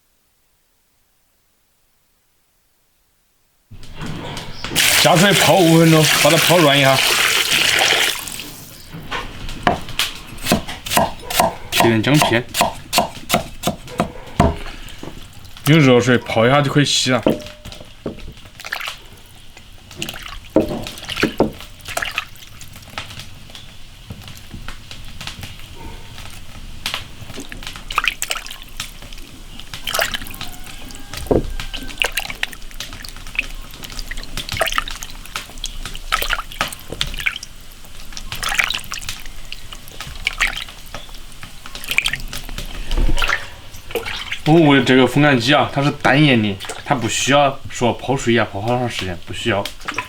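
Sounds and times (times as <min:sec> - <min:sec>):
water splashing and dripping: 0:03.8 - 0:50.0
knocks in basin: 0:09.7 - 0:14.7, 0:17.2 - 0:18.5, 0:20.6 - 0:21.6.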